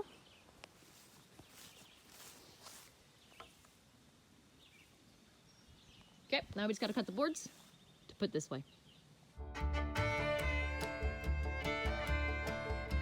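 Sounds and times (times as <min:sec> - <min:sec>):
faint outdoor ambience: 0:00.0 - 0:13.0.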